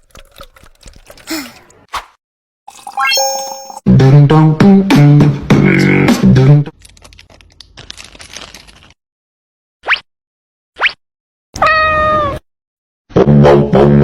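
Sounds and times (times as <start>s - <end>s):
cat meowing: 11.6s - 12.4s.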